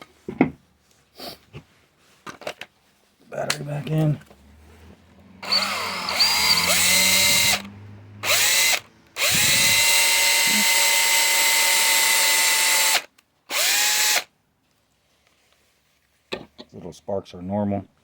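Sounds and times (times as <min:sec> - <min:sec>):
cordless drill motor whining: 0:05.4 - 0:14.3.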